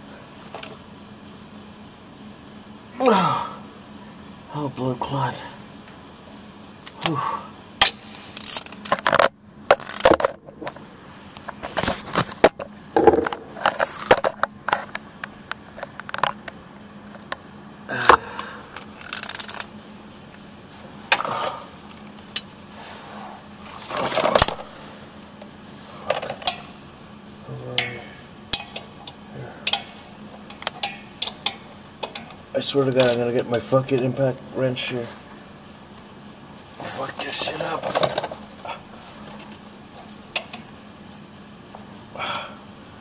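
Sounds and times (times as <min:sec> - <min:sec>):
scraping rustles: 0:22.6 - 0:25.0.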